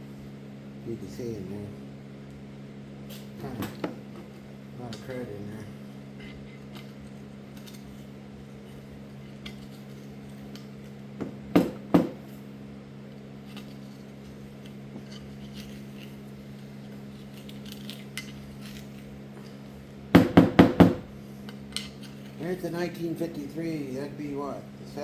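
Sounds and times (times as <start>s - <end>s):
steady low hum: 0.0s - 25.0s
sharp knocks: 11.2s - 12.2s, 20.2s - 21.1s.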